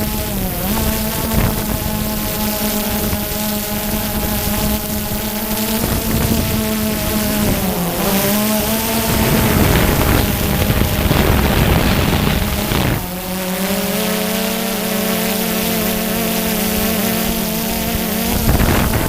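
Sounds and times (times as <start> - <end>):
drone motors whining: 0.0 - 19.0
loud rumbling noise: 0.6 - 13.3, 17.7 - 19.0.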